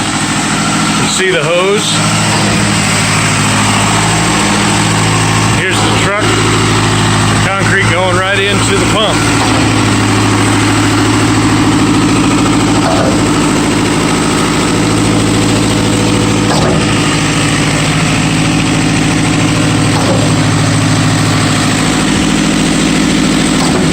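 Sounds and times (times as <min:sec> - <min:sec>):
diesel engines running: 0:00.0 - 0:23.9.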